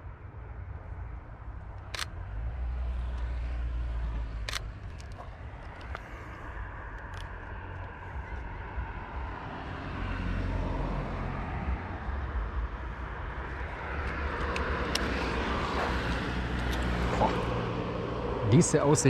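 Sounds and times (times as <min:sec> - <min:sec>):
vehicle engine rumble: 0:00.0 - 0:19.0
faint clicks: 0:06.9 - 0:08.4.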